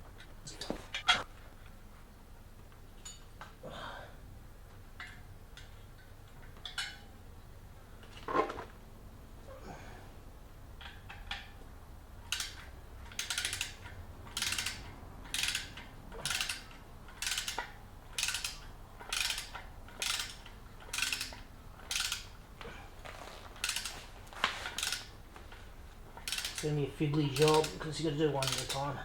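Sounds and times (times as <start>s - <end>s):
socket ratchet clicking: 12.3s - 22.4s, 23.6s - 24.0s, 24.7s - 25.1s, 26.2s - 26.7s, 27.4s - 27.8s, 28.4s - 28.9s.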